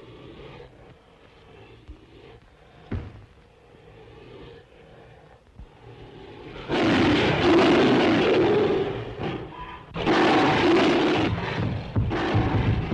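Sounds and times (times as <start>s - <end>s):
monster roaring: 6.7s - 12.9s.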